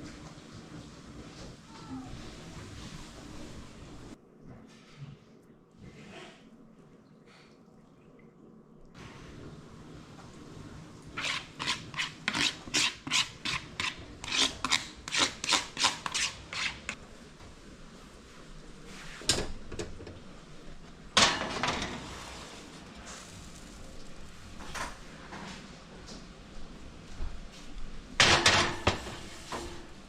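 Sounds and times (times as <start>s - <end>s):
rasping scraping strokes: 11.2s - 17.0s.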